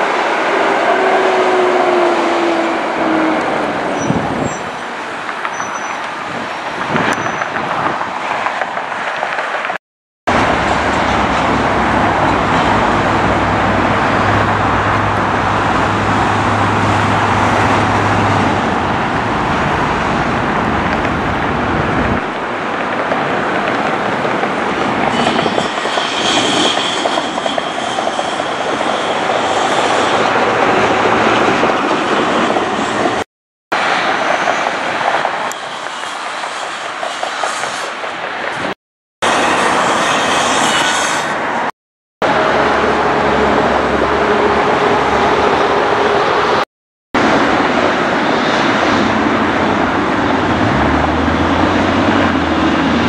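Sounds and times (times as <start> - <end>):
jet engines roaring: 0.0 - 33.2, 47.2 - 53.0.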